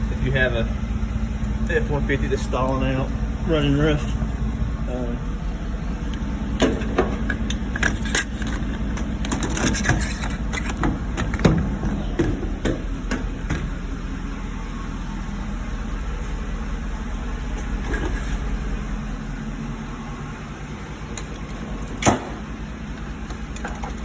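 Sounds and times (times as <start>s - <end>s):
truck engine idling: 0.0s - 24.0s
handling clicks and knocks: 6.1s - 13.8s, 21.0s - 24.0s.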